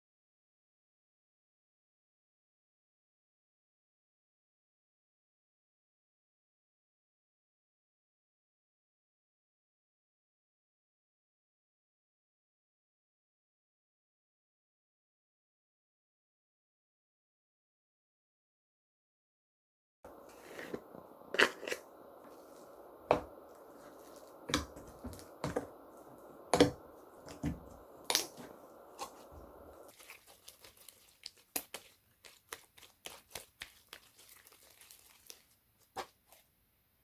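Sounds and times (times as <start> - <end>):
slime squishing with sticky pops: 26.5 - 36.4.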